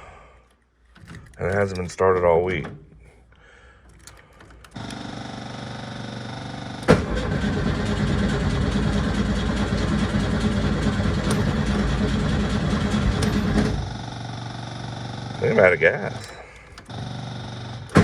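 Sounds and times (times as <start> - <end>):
car engine cranking: 3.8 - 18.0
starter clunk: 6.7 - 14.6, 16.1 - 18.0.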